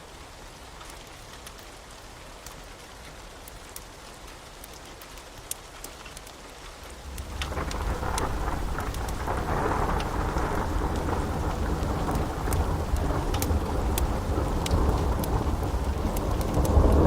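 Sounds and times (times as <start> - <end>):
rain pattering: 0.0 - 17.0
thunder rumbling: 7.0 - 17.0.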